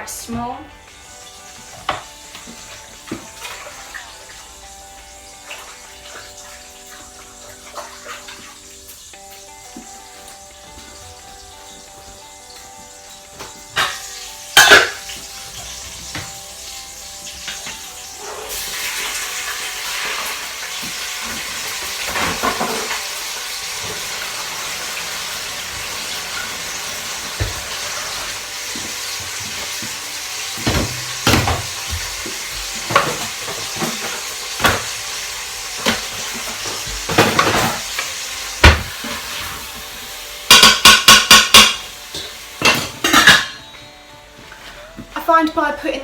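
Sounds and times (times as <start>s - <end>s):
meat sizzling in oil: 0.8s - 44.4s
utensil knocking against pot: 40.5s - 41.8s.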